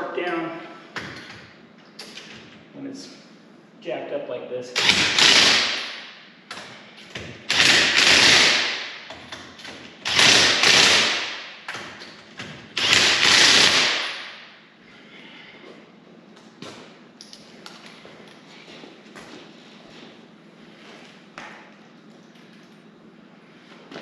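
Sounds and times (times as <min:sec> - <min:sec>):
impact driver hammering lug nuts: 0:04.8 - 0:06.0, 0:07.2 - 0:14.4.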